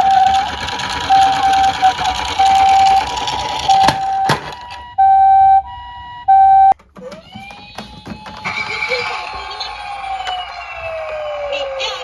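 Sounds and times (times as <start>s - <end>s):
toy two-tone siren: 0.0s - 9.1s.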